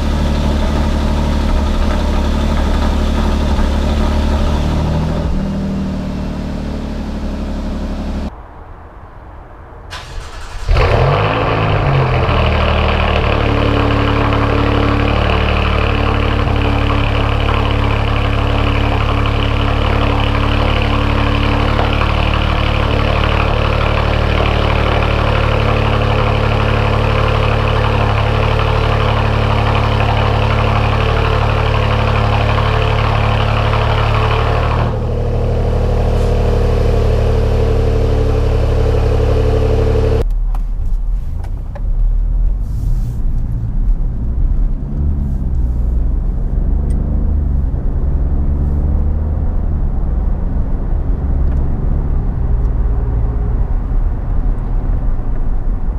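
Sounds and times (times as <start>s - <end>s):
car engine idling fast: 0.0s - 8.3s, 10.0s - 40.3s
car engine rumble from inside cabin: 0.0s - 8.3s, 10.1s - 55.9s.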